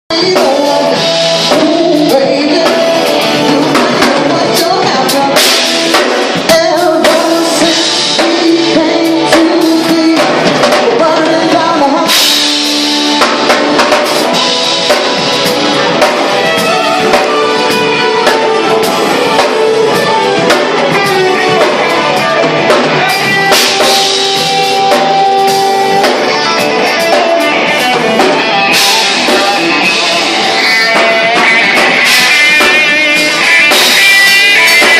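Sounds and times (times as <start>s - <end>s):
funk band playing: 0.1s - 34.9s.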